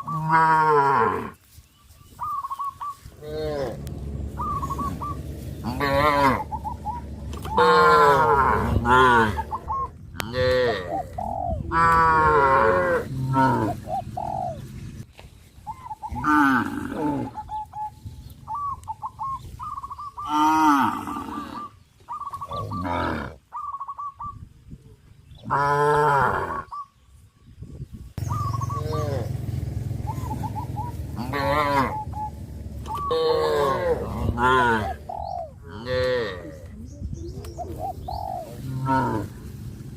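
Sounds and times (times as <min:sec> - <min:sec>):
cattle mooing: 0:00.0 - 0:01.4, 0:03.2 - 0:09.6, 0:10.2 - 0:13.8, 0:28.4 - 0:30.5, 0:31.1 - 0:32.1, 0:32.8 - 0:35.1, 0:35.7 - 0:36.6, 0:38.6 - 0:39.4
bird chirping: 0:01.3 - 0:11.8, 0:17.4 - 0:20.4, 0:21.5 - 0:25.5, 0:26.7 - 0:35.6.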